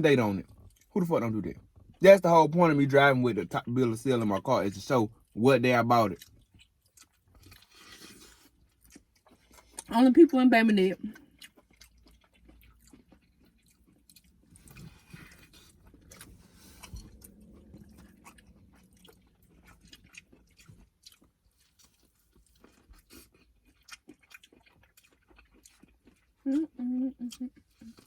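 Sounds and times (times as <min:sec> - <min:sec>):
person chewing: 0:00.2 - 0:00.9, 0:06.0 - 0:09.9, 0:11.1 - 0:28.0.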